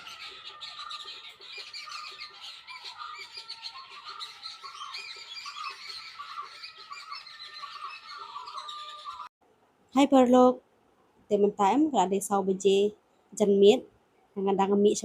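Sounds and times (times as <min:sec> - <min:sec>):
birds chirping: 0:00.0 - 0:09.3.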